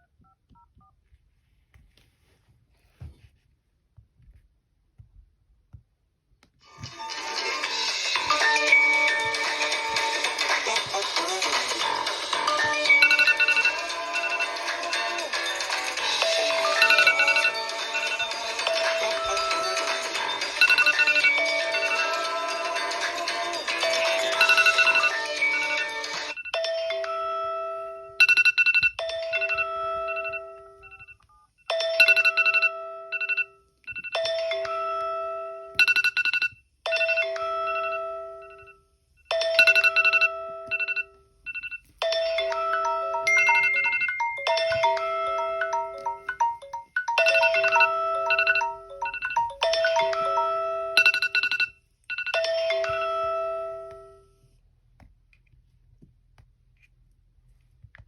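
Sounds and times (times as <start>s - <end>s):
phone ringtone chime: 6.9s - 54.3s
phone rapid beeping: 7.4s - 26.6s, 28.1s - 31.2s, 31.8s - 34.2s, 35.8s - 38.7s, 39.4s - 53.6s.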